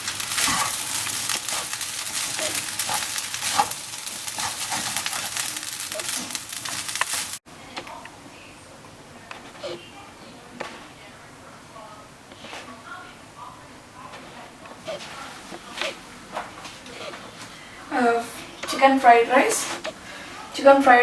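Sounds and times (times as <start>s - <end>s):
food sizzling in a pan: 0.0s - 7.4s
spatula scraping pan: 0.0s - 7.4s, 9.3s - 9.9s, 14.1s - 20.4s.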